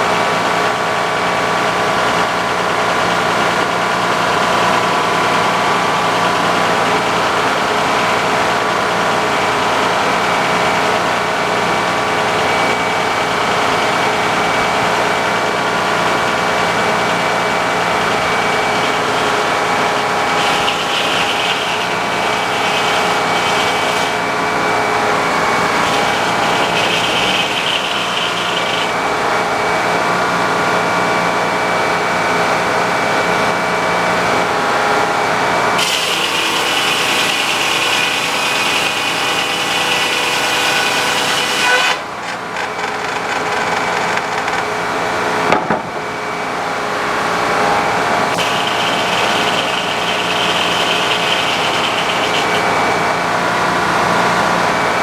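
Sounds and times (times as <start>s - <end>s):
sawmill engine: 0.0s - 55.0s
single knock: 45.5s - 46.0s.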